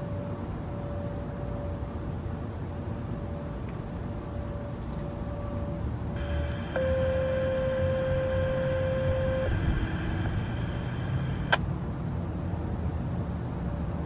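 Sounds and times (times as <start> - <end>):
radio transmission click: 6.2 - 11.6
two-tone paging tones: 6.2 - 11.6.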